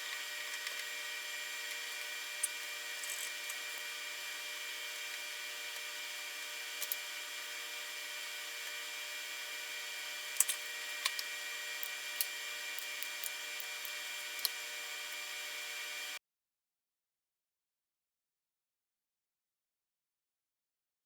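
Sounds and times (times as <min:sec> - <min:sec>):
faint high electrical whines: 0:00.0 - 0:16.2.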